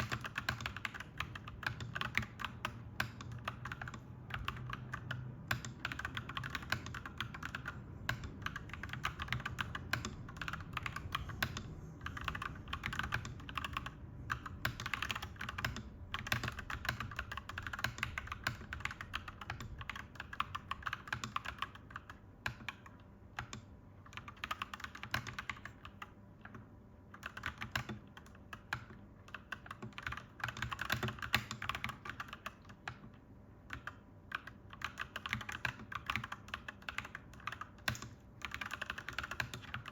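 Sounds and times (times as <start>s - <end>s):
faint low hum: 0.0s - 39.9s
mechanical keyboard typing: 0.0s - 39.9s.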